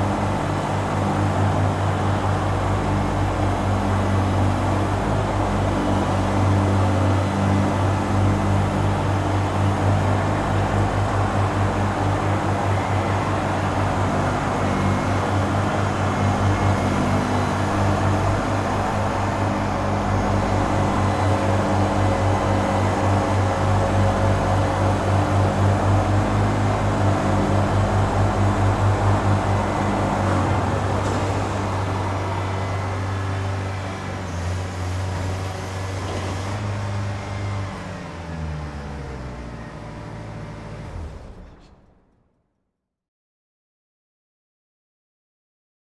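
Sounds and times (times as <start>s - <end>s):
ice resurfacer engine hum: 0.0s - 42.0s.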